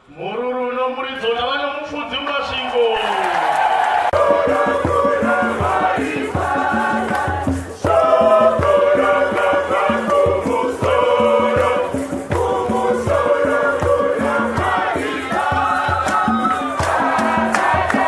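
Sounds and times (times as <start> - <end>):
choir singing a hymn: 3.8 - 18.0
steady drum beat: 4.1 - 18.0.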